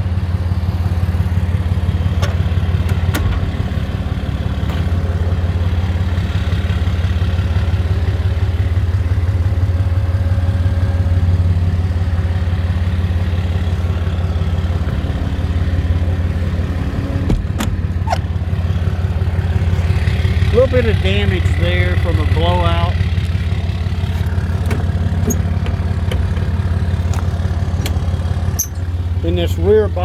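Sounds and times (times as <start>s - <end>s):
diesel engine idling: 0.0s - 30.0s.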